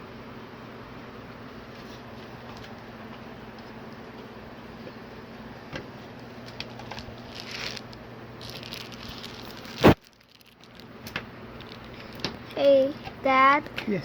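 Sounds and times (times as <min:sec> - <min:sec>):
steady low hum: 0:00.0 - 0:14.0
rustling and scraping: 0:06.5 - 0:10.9.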